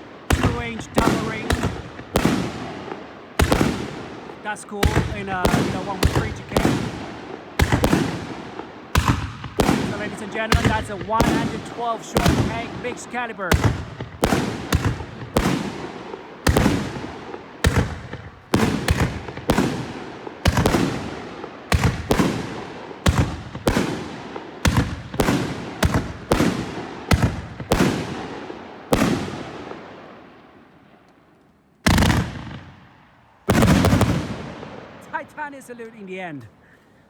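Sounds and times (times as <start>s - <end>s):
fireworks shells bursting: 0.0s - 7.0s.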